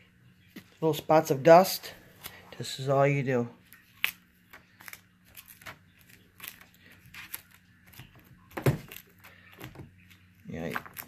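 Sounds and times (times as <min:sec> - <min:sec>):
tape rustling and clicking: 0:03.7 - 0:11.0.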